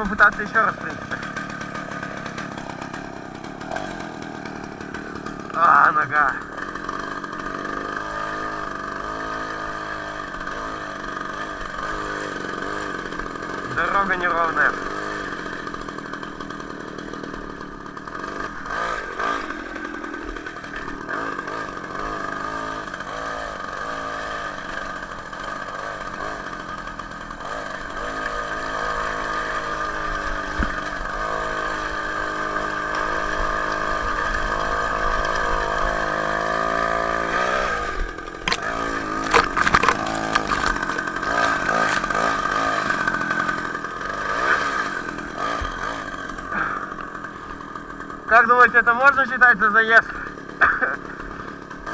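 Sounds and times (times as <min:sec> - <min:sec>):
two-stroke moped engine under load: 0:00.0 - 0:51.9
sharp knocks and clatters: 0:38.5 - 0:41.1.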